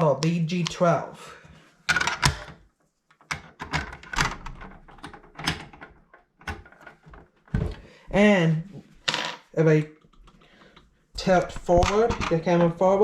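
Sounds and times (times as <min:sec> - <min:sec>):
knocks and clicks of handling: 0:01.9 - 0:07.9, 0:10.0 - 0:12.8.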